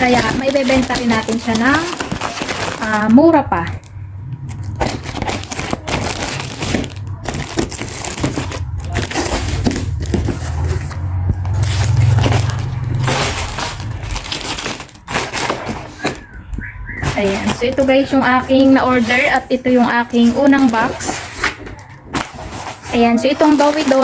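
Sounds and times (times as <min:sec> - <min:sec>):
packaging crinkling: 0:00.0 - 0:24.0
low hum: 0:02.8 - 0:20.4.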